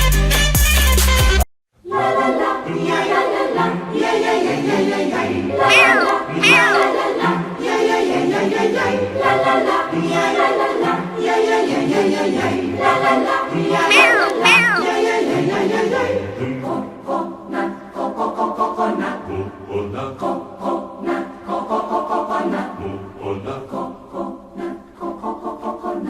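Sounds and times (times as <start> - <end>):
choir singing over a beat: 1.8 - 15.1.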